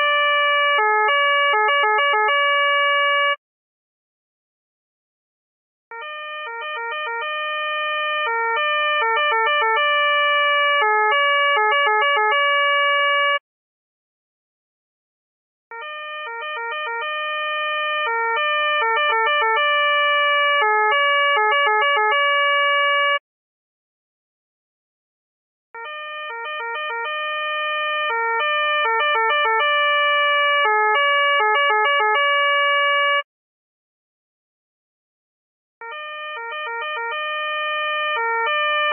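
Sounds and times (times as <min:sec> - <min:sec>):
two-tone police siren: 0:00.0 - 0:03.4, 0:05.9 - 0:13.4, 0:15.7 - 0:23.2, 0:25.8 - 0:33.3, 0:35.8 - 0:38.9.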